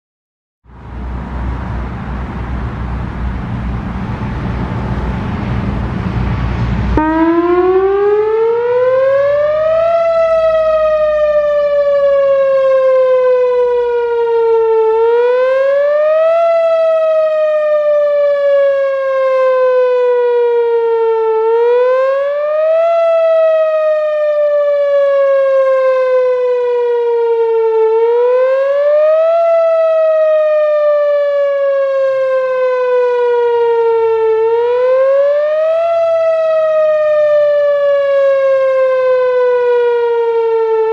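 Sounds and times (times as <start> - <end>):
steady rushing noise: 0.7 - 8.0
wailing warning siren: 0.7 - 40.9.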